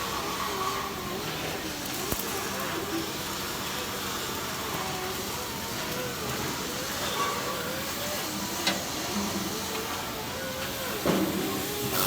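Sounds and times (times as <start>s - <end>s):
arc welding hiss and crackle: 0.0s - 12.0s.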